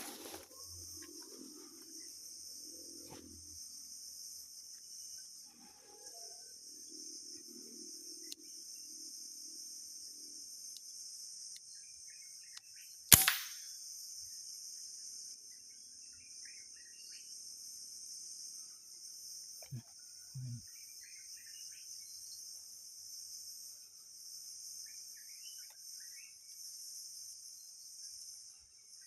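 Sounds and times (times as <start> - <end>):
high insect drone: 0.0 - 29.0
sharp gunshot: 13.1 - 13.6.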